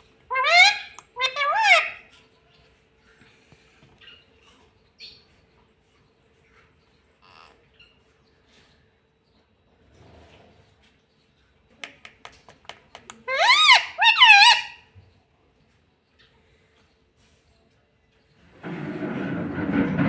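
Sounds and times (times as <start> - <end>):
parakeet shrill calls: 0.3 - 2.1, 13.3 - 14.8
parrot squeak: 0.3 - 2.1, 13.3 - 14.8.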